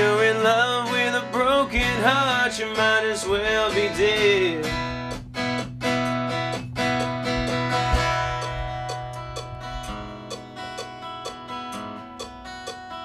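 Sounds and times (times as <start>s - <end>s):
acoustic guitar strumming chords: 0.0s - 13.0s
held bass note: 7.3s - 10.3s.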